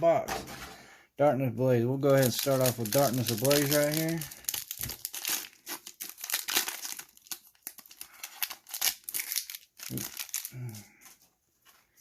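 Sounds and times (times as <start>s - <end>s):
foil wrapper tearing and crinkling: 2.1s - 11.1s
sharp foil crackles: 2.1s - 11.1s.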